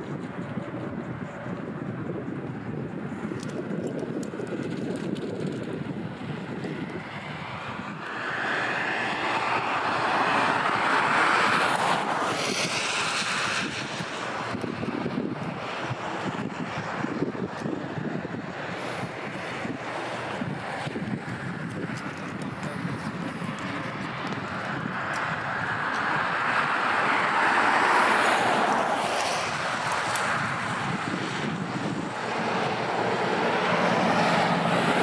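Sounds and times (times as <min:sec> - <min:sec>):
wind buffeting microphone: 0:00.0 - 0:35.0.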